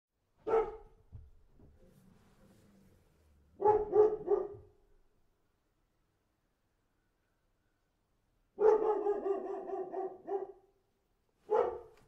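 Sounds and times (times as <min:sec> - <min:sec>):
dog barking: 0:00.4 - 0:01.0, 0:03.6 - 0:04.8, 0:08.6 - 0:10.8, 0:11.4 - 0:12.0.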